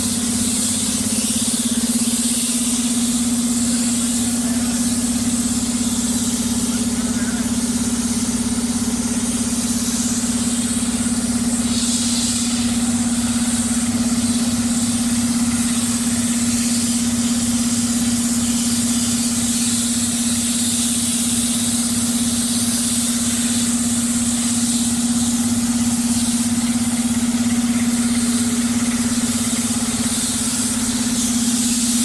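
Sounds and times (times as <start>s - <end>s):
diesel engine throbbing: 0.0s - 19.0s.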